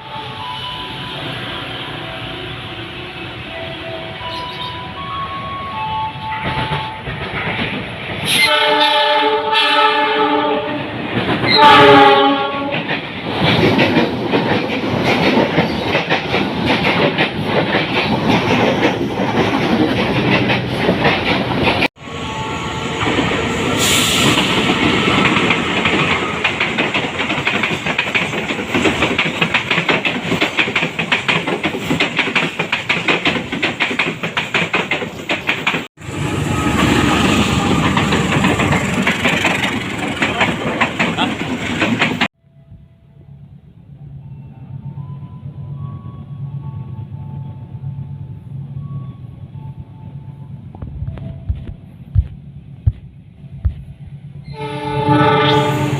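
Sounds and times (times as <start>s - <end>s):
train horn blasts: 8.3s - 10.9s, 11.5s - 12.9s, 22.0s - 24.9s, 36.0s - 38.8s, 54.4s - 55.9s
train wheels clattering: 10.6s - 21.9s, 23.0s - 35.9s, 36.6s - 42.3s.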